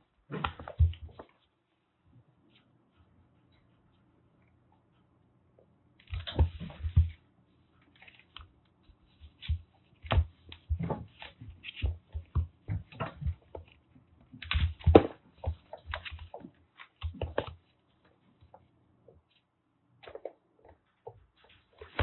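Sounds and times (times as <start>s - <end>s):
kittens paws scrabbling: 7.8s - 18.6s
light thumps and knocks: 9.4s - 13.8s.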